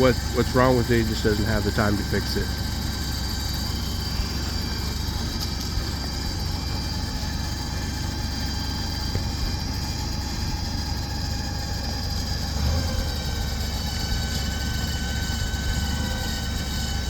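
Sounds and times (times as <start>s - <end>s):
truck engine idling: 0.0s - 17.0s.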